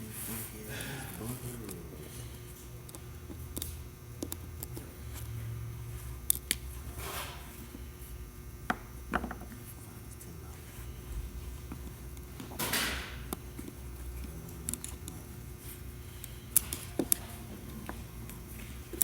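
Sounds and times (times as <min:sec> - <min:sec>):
low steady hum: 0:00.0 - 0:19.0
small tools clicking and tapping: 0:16.2 - 0:19.0.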